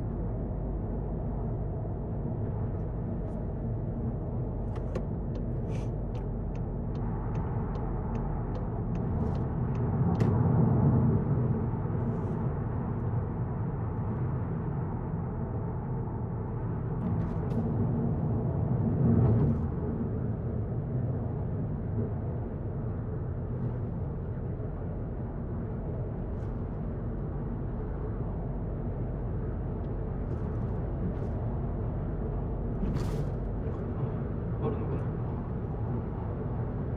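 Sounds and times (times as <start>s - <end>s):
car engine and road rumble: 0.0s - 36.9s
turn signal ticking: 4.8s - 10.3s.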